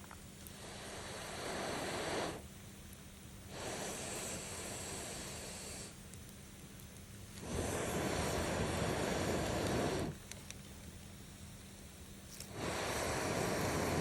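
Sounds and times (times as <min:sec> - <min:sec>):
air blown into fire: 0:00.4 - 0:02.5, 0:03.4 - 0:06.0, 0:07.3 - 0:10.4, 0:12.4 - 0:14.0.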